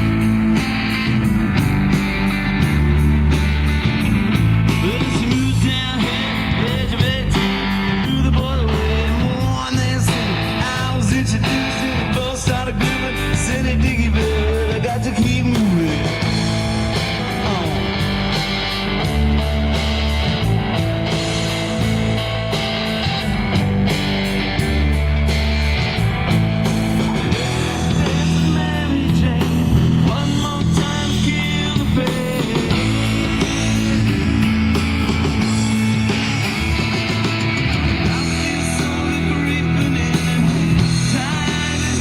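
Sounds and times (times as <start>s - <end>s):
bass guitar: 0.0s - 42.0s
drums: 0.0s - 42.0s
electric guitar: 0.0s - 42.0s
live rock band playing: 0.0s - 42.0s
person singing: 4.8s - 16.4s, 17.1s - 18.2s, 27.0s - 34.6s, 35.6s - 42.0s.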